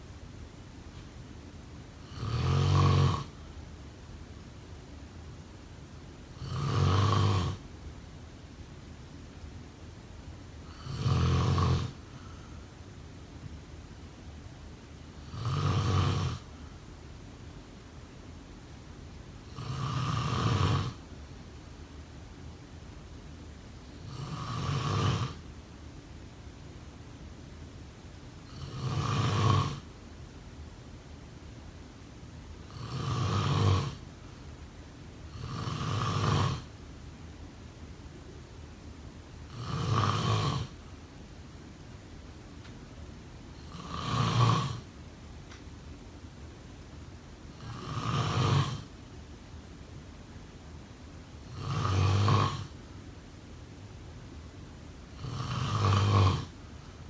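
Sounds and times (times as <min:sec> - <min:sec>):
person snoring: 0:02.0 - 0:03.4, 0:06.4 - 0:07.6, 0:10.7 - 0:12.6, 0:15.2 - 0:16.6, 0:19.5 - 0:21.0, 0:24.0 - 0:25.4, 0:28.5 - 0:29.9, 0:32.7 - 0:34.0, 0:35.3 - 0:36.7, 0:39.5 - 0:40.8, 0:43.6 - 0:44.9, 0:47.6 - 0:48.9, 0:51.4 - 0:52.8, 0:55.1 - 0:56.6.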